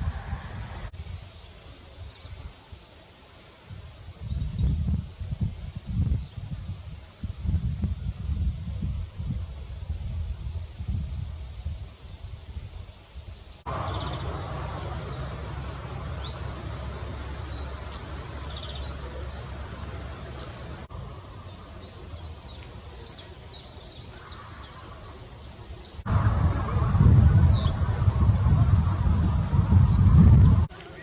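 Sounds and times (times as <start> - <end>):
wind buffeting microphone: 0.0 - 1.4, 3.7 - 30.8
small songbirds singing: 3.8 - 8.5, 13.7 - 31.0
low outdoor rumble: 13.7 - 23.0, 26.0 - 30.7
small birds chirping: 13.7 - 31.0.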